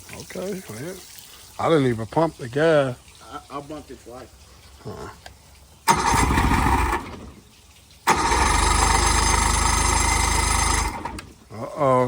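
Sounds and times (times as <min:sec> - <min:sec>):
outboard motor starter cranking: 0:05.8 - 0:11.5.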